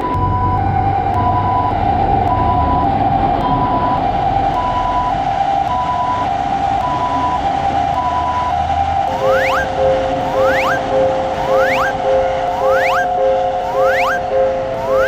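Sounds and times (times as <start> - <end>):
crossing alarm two tones: 9.1 - 15.0.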